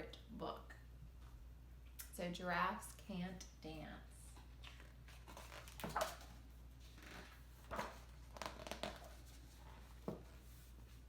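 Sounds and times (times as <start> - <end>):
paper pages rustling: 4.6 - 11.0.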